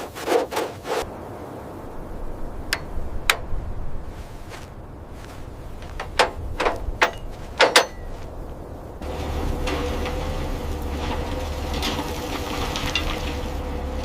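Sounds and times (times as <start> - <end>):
low rumble: 1.0 - 14.0
sharp knocks: 5.8 - 8.2.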